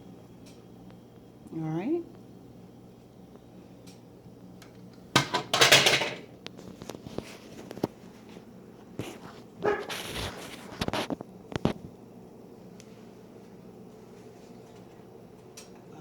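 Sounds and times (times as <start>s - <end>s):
pot and jug knocks and clinks: 5.2s - 6.2s.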